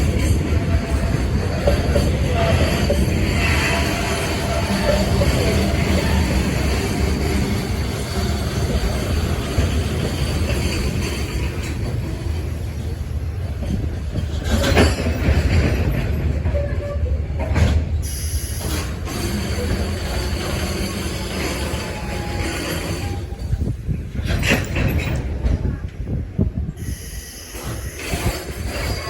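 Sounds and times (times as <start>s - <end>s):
train wheels rumbling on rail: 0.0s - 29.0s
faint high wheel squeal: 26.8s - 29.0s.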